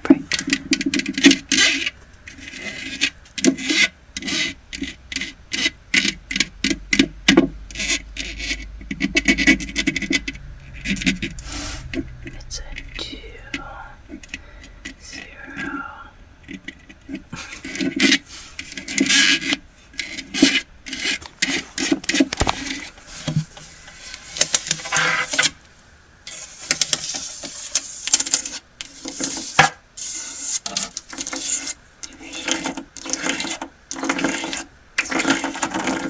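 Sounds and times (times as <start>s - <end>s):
sharp clicks and scrapes: 0.1s - 15.8s, 16.4s - 25.6s, 26.2s - 36.0s
scratching and rubbing on object: 1.2s - 6.1s, 15.2s - 25.6s, 26.3s - 36.0s.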